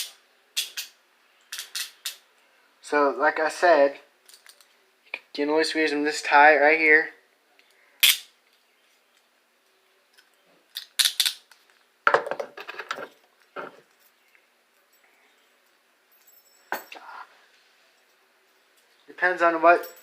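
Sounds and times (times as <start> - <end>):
handcuffs clicking and clinking: 0.0 - 2.2, 4.2 - 4.7, 8.0 - 8.3, 10.1 - 11.7, 19.8 - 20.0.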